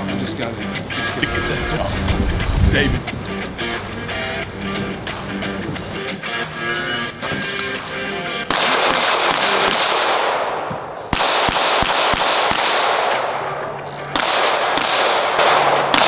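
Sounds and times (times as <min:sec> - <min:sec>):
loud rushing noise: 0:00.8 - 0:06.6
pistol shots: 0:06.4 - 0:16.0.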